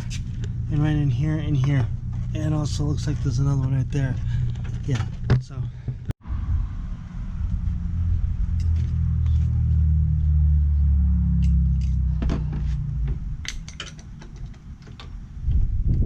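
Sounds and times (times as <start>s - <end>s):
low steady rumble: 0.0s - 16.0s
metal tools and screws clinking: 13.4s - 15.2s.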